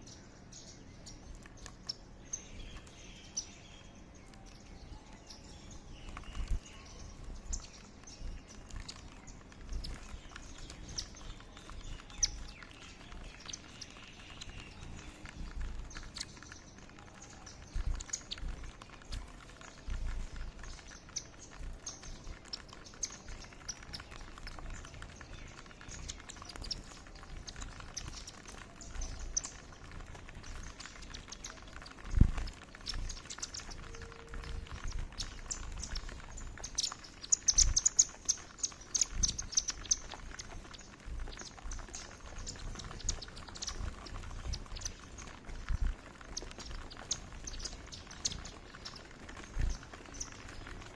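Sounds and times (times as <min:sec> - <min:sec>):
small birds chirping: 0:00.0 - 0:50.9.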